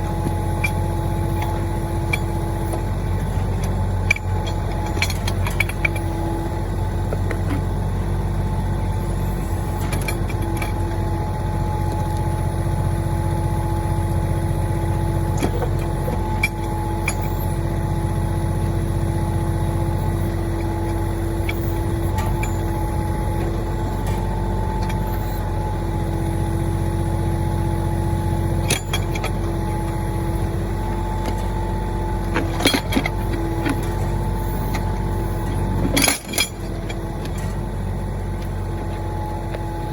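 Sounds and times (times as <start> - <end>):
diesel tractor engine running: 0.0 - 39.9.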